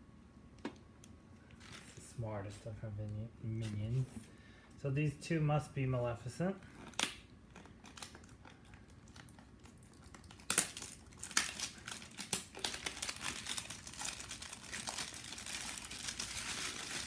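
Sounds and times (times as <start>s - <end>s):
faint handling of packaging: 1.4s - 2.2s, 6.5s - 17.0s
wrapper crinkling: 6.6s - 17.0s.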